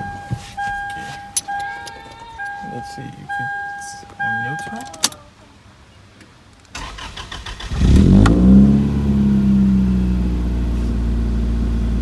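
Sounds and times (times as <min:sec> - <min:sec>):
engine starter cranking: 0:06.7 - 0:08.4
car engine revving and idling: 0:07.0 - 0:12.0.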